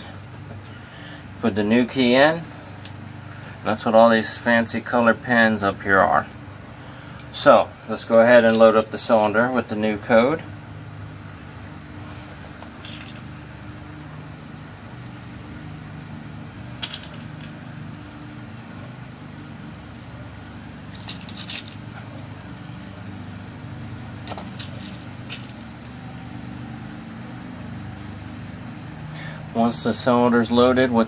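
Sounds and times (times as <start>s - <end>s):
small metal clicks: 24.2s - 26.0s.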